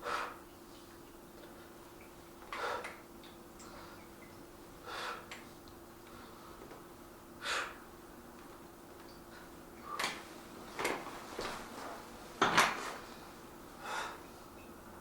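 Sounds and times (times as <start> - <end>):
faint steady hum: 0.0 - 15.0
man breathing forcefully: 2.5 - 3.0, 4.8 - 5.4, 7.4 - 7.8, 13.8 - 14.3.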